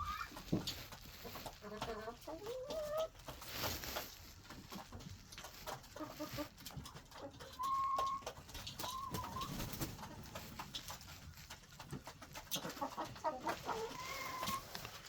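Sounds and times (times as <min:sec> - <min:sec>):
drawn-out whining hen calls: 0:00.0 - 0:00.4, 0:07.2 - 0:10.3, 0:13.0 - 0:14.8
hens clucking: 0:00.0 - 0:15.0.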